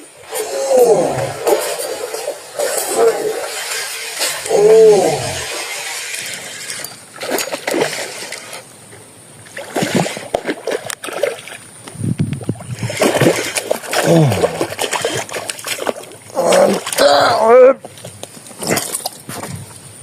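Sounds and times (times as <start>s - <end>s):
fish thrashing and splashing water: 5.3s - 8.7s, 9.5s - 11.7s, 12.6s - 17.1s.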